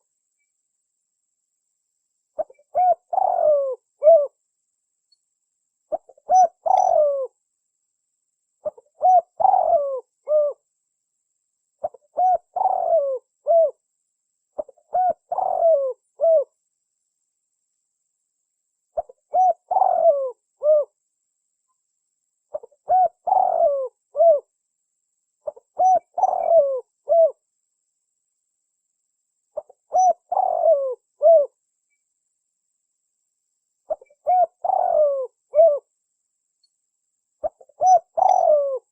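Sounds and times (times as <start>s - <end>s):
dove cooing: 2.4s - 4.4s, 5.9s - 7.4s, 8.6s - 10.6s, 11.8s - 13.8s, 14.6s - 16.5s, 19.0s - 21.0s, 22.5s - 24.5s, 25.4s - 27.4s, 29.6s - 31.6s, 33.9s - 35.9s, 37.4s - 38.9s.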